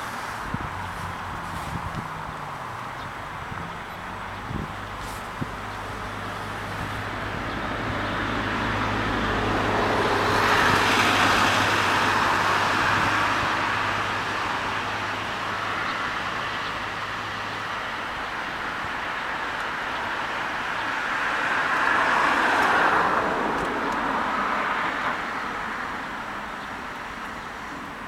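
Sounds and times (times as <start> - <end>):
motor vehicle passing: 0.0 - 17.0
low engine hum: 0.0 - 28.0.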